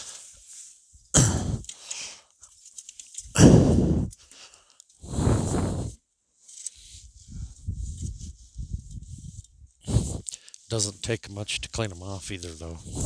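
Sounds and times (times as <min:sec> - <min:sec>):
soft scraping and rustling: 0:04.4 - 0:13.0
broom sweeping snow: 0:05.0 - 0:06.0, 0:09.9 - 0:10.9.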